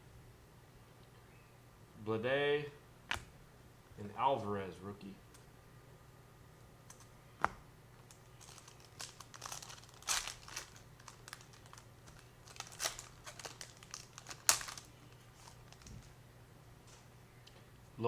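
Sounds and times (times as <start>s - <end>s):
foil wrapper crinkling and tearing: 8.0s - 16.2s.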